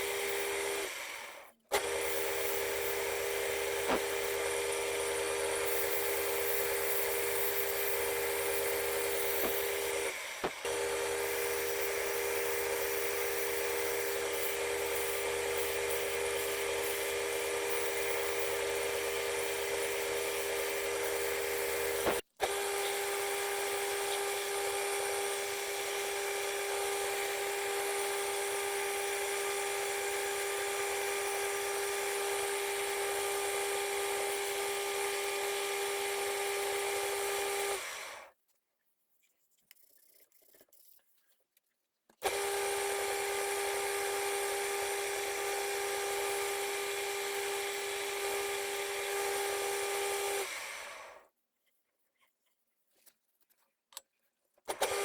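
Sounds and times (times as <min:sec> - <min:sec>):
wood lathe motor whine: 0:00.0 - 0:38.3, 0:42.2 - 0:51.2, 0:54.7 - 0:55.0.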